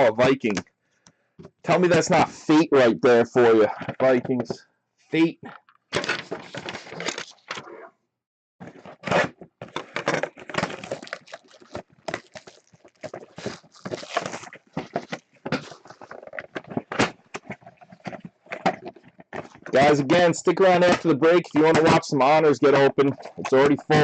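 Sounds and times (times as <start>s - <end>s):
crinkling of card wrappers: 8.7s - 20.0s.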